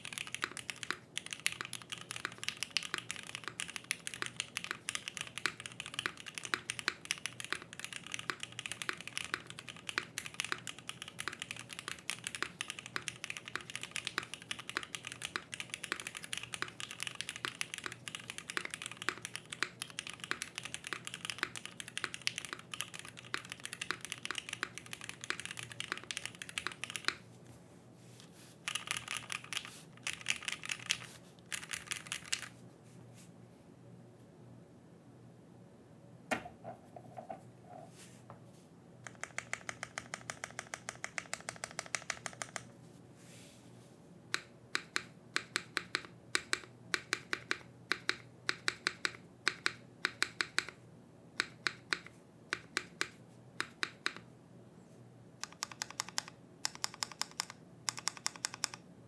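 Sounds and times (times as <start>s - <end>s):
mechanical keyboard typing: 0.0s - 27.2s, 28.7s - 32.6s, 39.1s - 42.7s, 44.4s - 50.8s, 51.4s - 54.2s, 55.4s - 58.8s.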